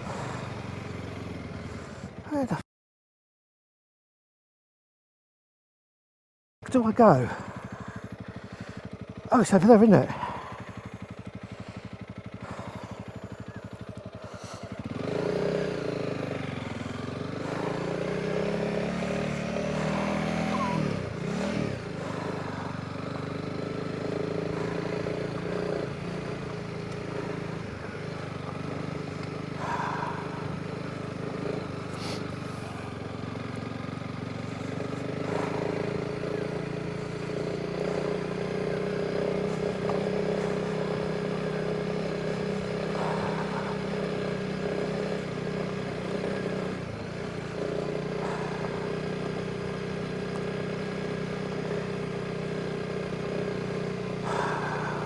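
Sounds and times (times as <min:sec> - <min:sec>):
motorcycle engine revving: 0:00.0 - 0:02.6, 0:06.6 - 0:55.0.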